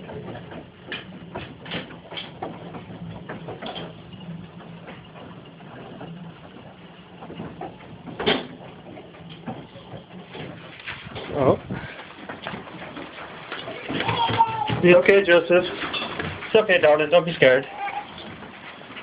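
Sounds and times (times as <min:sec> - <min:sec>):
hailstones striking house: 0:06.4 - 0:19.0.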